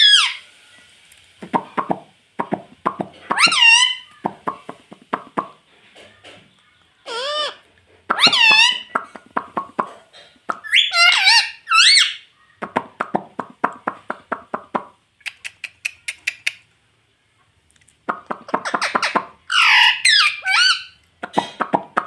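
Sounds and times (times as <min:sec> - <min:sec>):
parakeet squawks: 0:00.0 - 0:00.4, 0:03.2 - 0:04.6, 0:07.0 - 0:09.5, 0:10.6 - 0:12.3, 0:18.5 - 0:21.0
parakeet clicking chatter: 0:01.4 - 0:05.6, 0:07.1 - 0:12.1, 0:12.7 - 0:16.6, 0:18.1 - 0:22.0.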